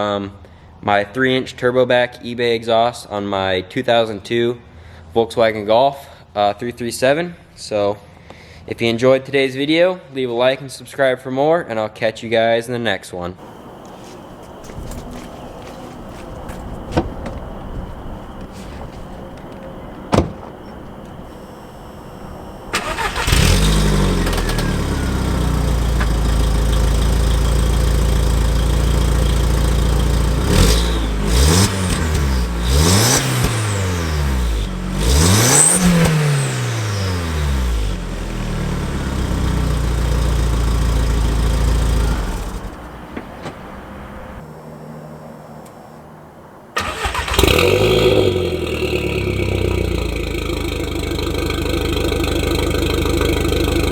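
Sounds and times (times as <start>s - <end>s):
car engine revving: 13.4s - 44.4s, 46.8s - 53.9s
car engine starting and idling: 13.4s - 44.5s, 46.7s - 53.9s.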